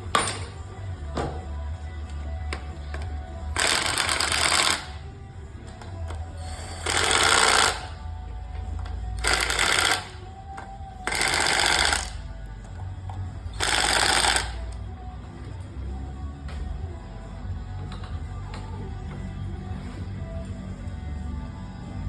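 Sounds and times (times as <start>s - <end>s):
radio playing music: 0.0s - 22.0s
handheld power tool bursts: 3.6s - 5.0s, 6.4s - 8.0s, 9.2s - 10.2s, 11.1s - 12.2s, 13.6s - 14.6s.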